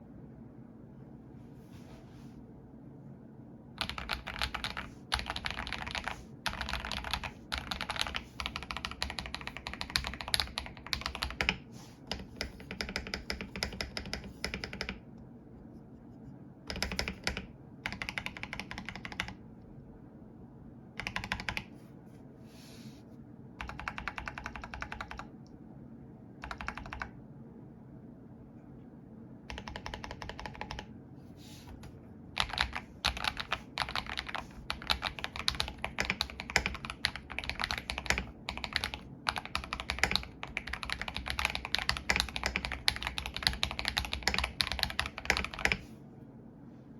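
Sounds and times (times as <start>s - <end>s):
mechanical keyboard typing: 3.8s - 15.0s, 16.7s - 19.4s, 21.0s - 21.7s, 23.6s - 25.3s, 26.4s - 27.2s, 29.5s - 30.9s, 31.8s - 45.9s.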